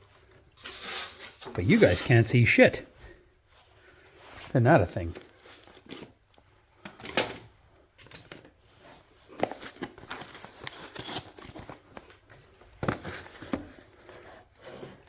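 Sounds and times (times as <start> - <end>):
small parts and wires handled: 5.0 - 15.0.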